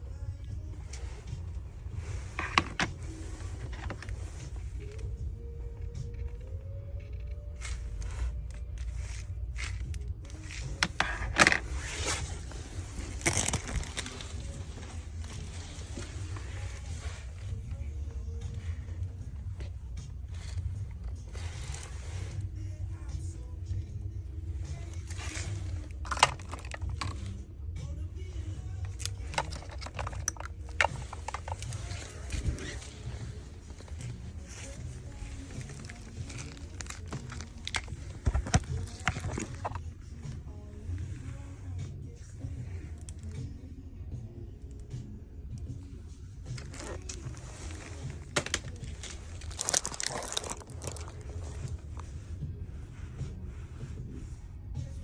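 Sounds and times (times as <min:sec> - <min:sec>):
scraping and clicking handling noises: 0:00.4 - 0:43.6, 0:45.6 - 0:55.0.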